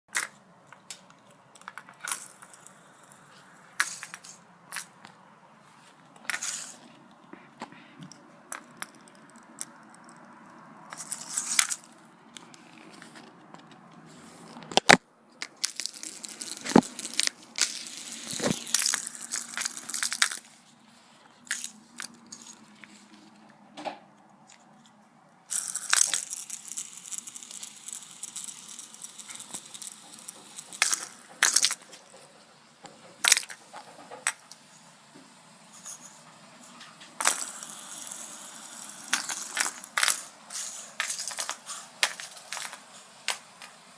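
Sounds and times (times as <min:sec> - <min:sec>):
fidget spinner clicks and knocks: 0:00.1 - 0:05.2, 0:14.6 - 0:20.6, 0:25.5 - 0:34.6, 0:35.8 - 0:43.8.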